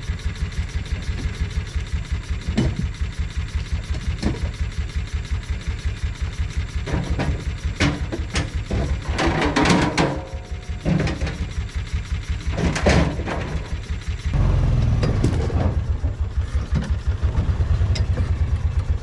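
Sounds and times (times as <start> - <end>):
utility vehicle engine running: 0.0 - 19.0
knocks rattles and clanks: 2.4 - 3.0, 6.9 - 11.6, 12.4 - 19.0.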